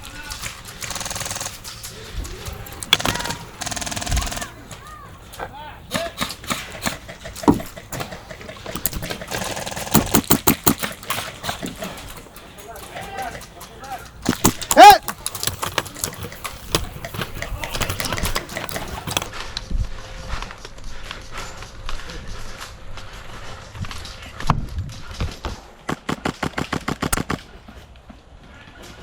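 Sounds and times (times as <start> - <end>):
airsoft guns firing: 0.0 - 19.3, 25.8 - 27.6.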